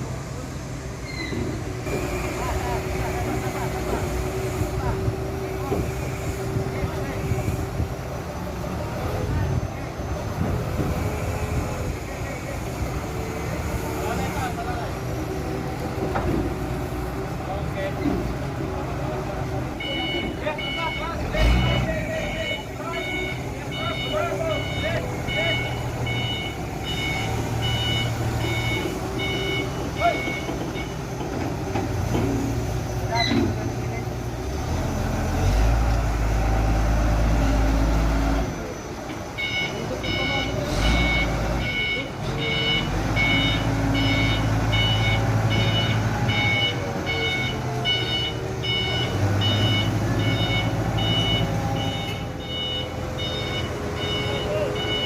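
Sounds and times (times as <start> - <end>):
forklift engine running: 0.0 - 55.0
reversing alarm beeping: 19.7 - 31.4, 37.2 - 55.0.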